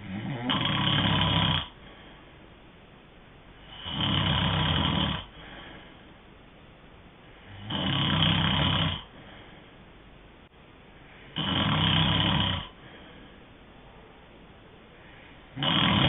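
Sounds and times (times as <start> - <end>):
person snoring: 0.0 - 1.8, 3.6 - 5.6, 7.5 - 9.1, 11.4 - 12.8, 15.5 - 16.0.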